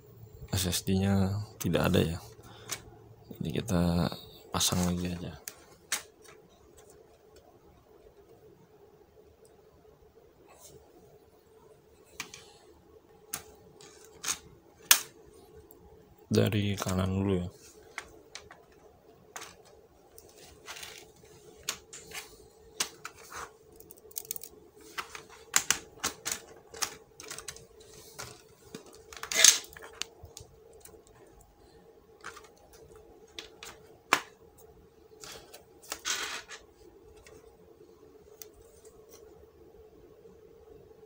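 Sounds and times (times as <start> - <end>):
faint steady hum: 0.0 - 41.0
plastic clips clicking and snapping: 23.8 - 31.2.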